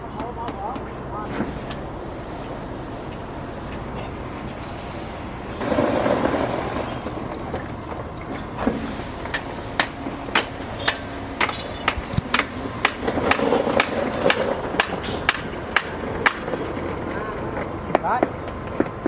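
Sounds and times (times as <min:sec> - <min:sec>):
machinery rumble: 0:00.0 - 0:19.0
sharp knocks: 0:08.6 - 0:16.7.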